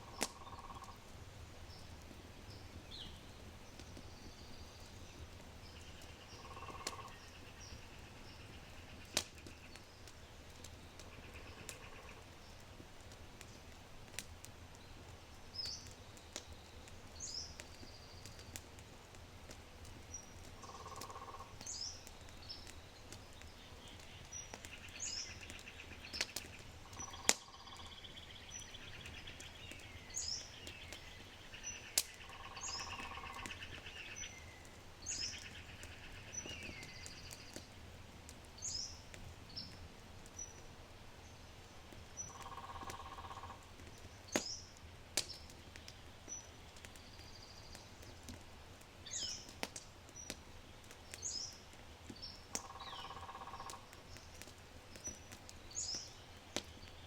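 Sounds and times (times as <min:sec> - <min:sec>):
fire popping and crackling: 0:00.0 - 0:57.0
low rounder bird call: 0:20.6 - 0:21.6, 0:23.7 - 0:37.5, 0:42.2 - 0:43.7, 0:52.6 - 0:54.1
birds chirping and trilling: 0:24.6 - 0:37.6.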